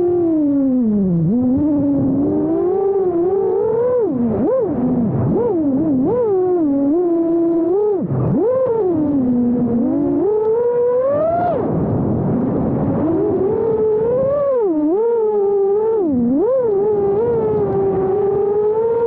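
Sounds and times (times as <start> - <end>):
drone motors whining: 0.0 - 19.0.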